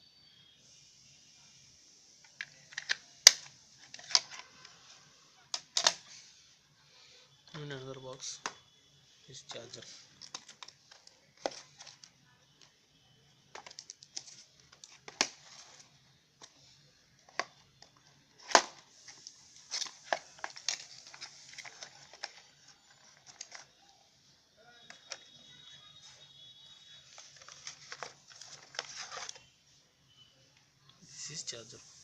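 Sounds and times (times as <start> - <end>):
packaging crinkling and tearing: 18.3 - 23.8, 27.1 - 29.5.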